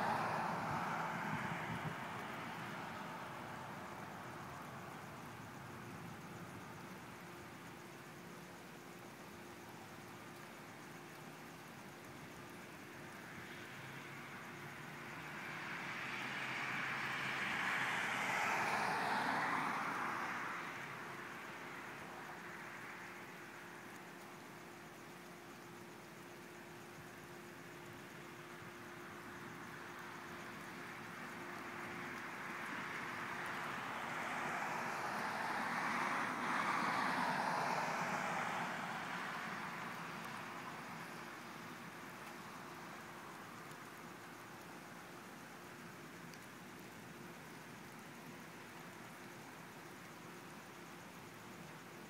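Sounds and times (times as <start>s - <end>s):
car passing by: 0.0s - 6.8s, 13.2s - 24.4s, 29.0s - 46.9s
vehicle passing by: 15.3s - 21.0s, 32.7s - 40.8s.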